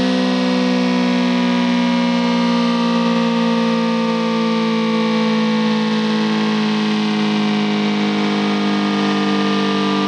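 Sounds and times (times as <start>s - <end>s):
warning siren sustained tone: 0.0s - 10.0s.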